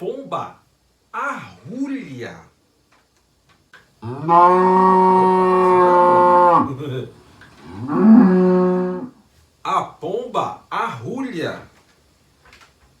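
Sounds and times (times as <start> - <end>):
cow mooing: 4.0 - 6.8, 7.6 - 9.2.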